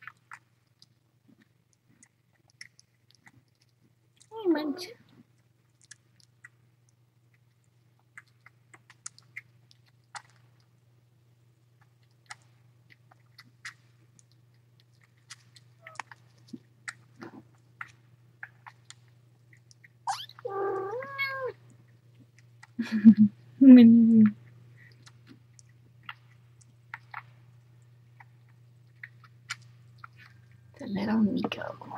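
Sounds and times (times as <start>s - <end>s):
steady low hum: 0.0s - 31.9s
cat meowing: 20.1s - 21.6s
faint ticks and clicks: 24.3s - 30.6s.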